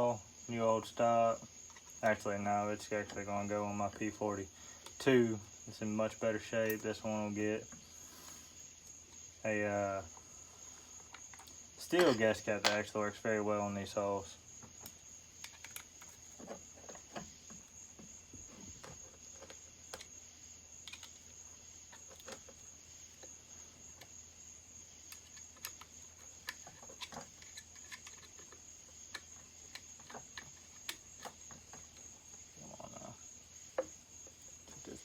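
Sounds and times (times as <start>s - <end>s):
hand tools clicking and tapping: 11.1s - 12.9s, 14.6s - 18.1s, 20.8s - 21.3s, 25.1s - 32.4s.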